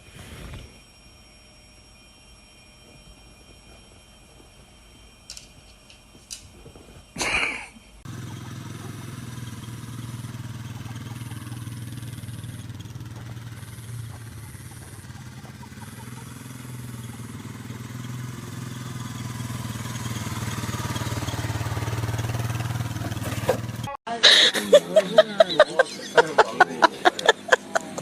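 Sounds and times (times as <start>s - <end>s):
engine droning: 8.0s - 24.0s, 24.7s - 28.0s.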